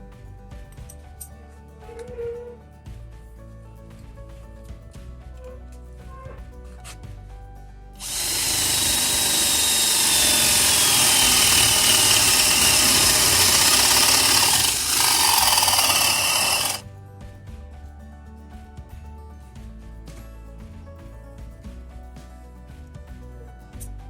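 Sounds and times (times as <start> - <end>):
cordless drill whirring: 8.0 - 16.8.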